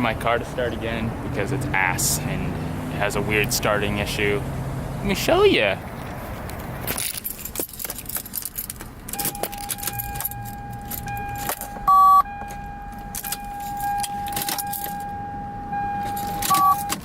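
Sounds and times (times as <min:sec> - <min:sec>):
car keys jangling: 0:06.5 - 0:15.2, 0:15.8 - 0:17.0
electronic warning tone: 0:09.2 - 0:17.0
short loud beep: 0:09.2 - 0:17.0.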